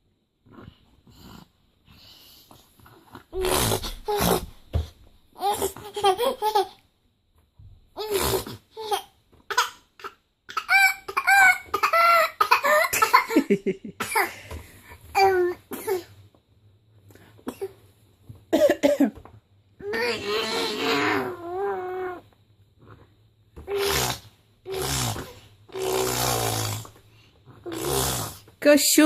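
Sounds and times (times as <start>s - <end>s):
baby laughing: 5.4s - 6.8s, 8.8s - 13.5s.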